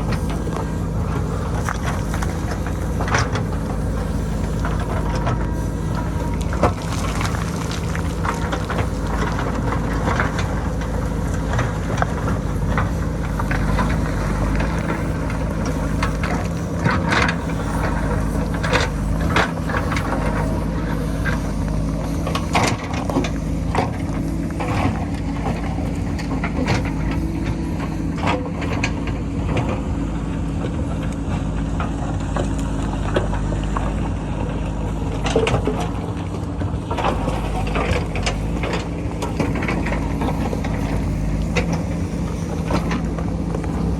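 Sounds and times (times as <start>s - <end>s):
rocks clattering and falling: 0.0s - 28.1s
backhoe diesel engine under load: 0.0s - 43.9s.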